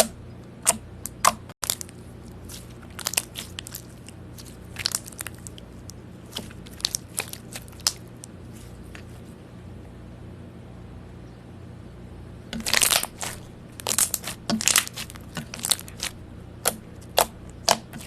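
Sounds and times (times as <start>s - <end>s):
faint low hum: 0.0s - 18.0s
slime squeezed crackling pops: 12.6s - 18.0s.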